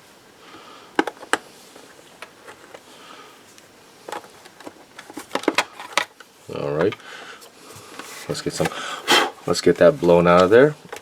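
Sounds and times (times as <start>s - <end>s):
tools and plastic parts clicking: 1.0s - 1.4s, 4.0s - 6.2s.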